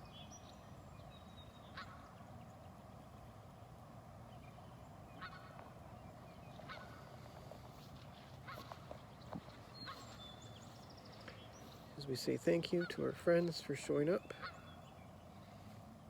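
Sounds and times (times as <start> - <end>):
geese honking: 5.1 - 5.9, 6.5 - 9.1, 9.7 - 10.8, 12.6 - 14.8.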